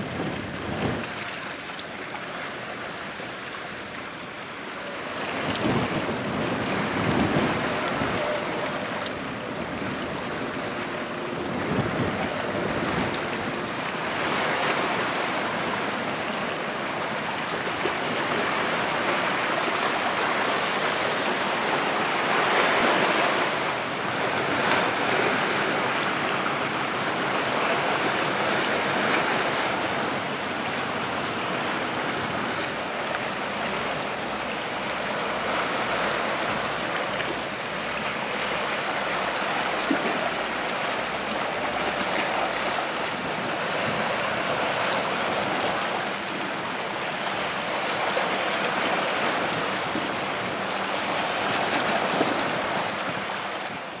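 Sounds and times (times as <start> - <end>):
wind buffeting microphone: 0.0 - 1.3, 5.1 - 53.8
water rushing: 0.0 - 54.0.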